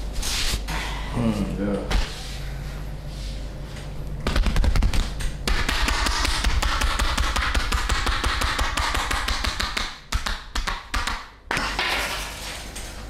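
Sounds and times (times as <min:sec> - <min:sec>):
percussive massage taps: 0:04.2 - 0:11.7.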